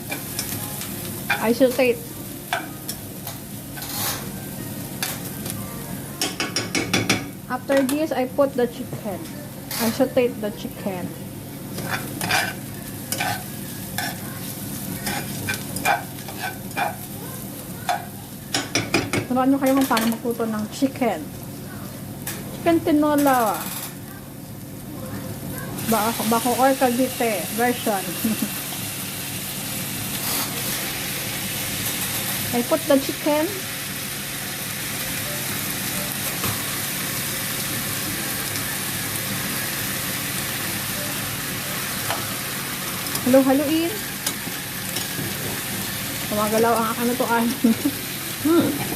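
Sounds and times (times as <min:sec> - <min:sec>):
chicken sizzling in hot oil: 0:00.0 - 0:48.9
utensil scraping pan: 0:15.0 - 0:17.0.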